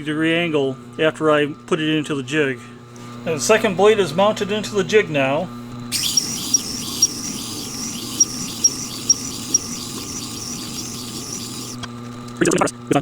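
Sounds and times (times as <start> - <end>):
light ticking: 5.9 - 11.8.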